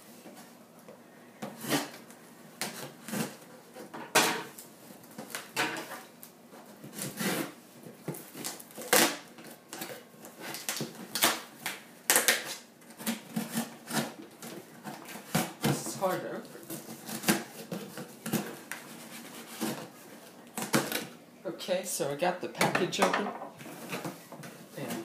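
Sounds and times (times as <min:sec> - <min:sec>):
scissors cutting packing tape: 0:06.9 - 0:15.9, 0:16.6 - 0:18.8.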